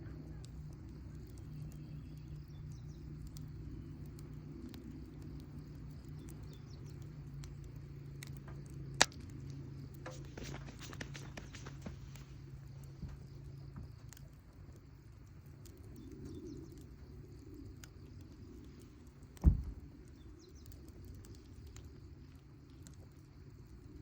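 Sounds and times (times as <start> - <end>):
faint clicks and crackles: 0.0 - 24.0
steady low hum: 0.0 - 24.0
loud dull thump: 19.4 - 19.8.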